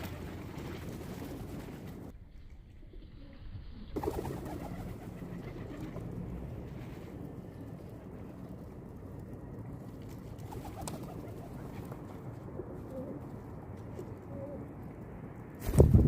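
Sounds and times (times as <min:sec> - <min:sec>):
low steady hum: 0:00.0 - 0:16.0
pigeons cooing: 0:03.9 - 0:06.4, 0:12.8 - 0:13.3, 0:14.0 - 0:14.8.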